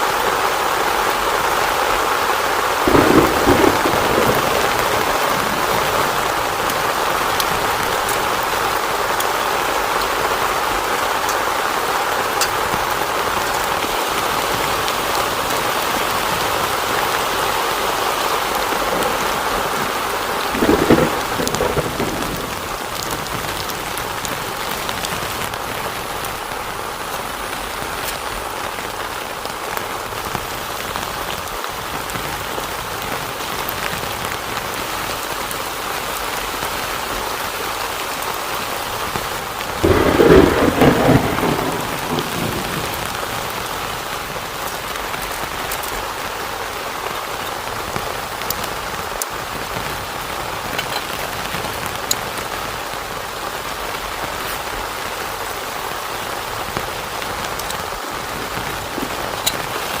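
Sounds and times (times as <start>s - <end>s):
heavy rain on a tent: 0.0s - 60.0s
thunder rumble: 1.0s - 11.2s, 11.8s - 31.1s, 39.7s - 45.6s, 56.6s - 60.0s.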